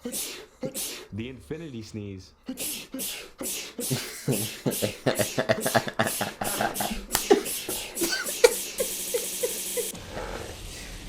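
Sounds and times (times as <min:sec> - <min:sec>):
person sneezing: 0:00.0 - 0:01.1, 0:02.5 - 0:09.9.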